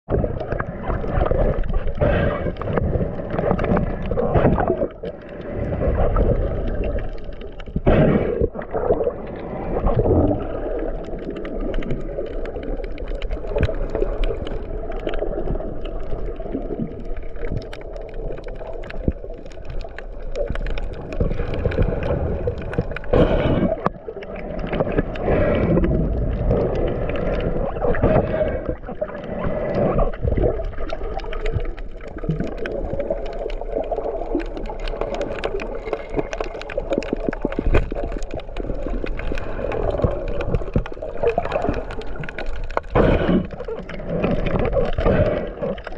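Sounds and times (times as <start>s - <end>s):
water rushing underwater: 0.0s - 45.9s.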